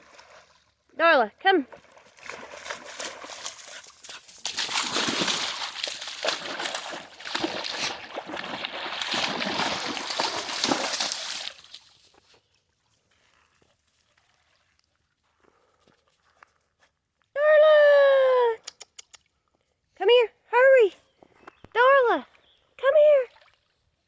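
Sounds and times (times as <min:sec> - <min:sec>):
dog splashing through water: 0:00.0 - 0:00.7, 0:01.6 - 0:12.1.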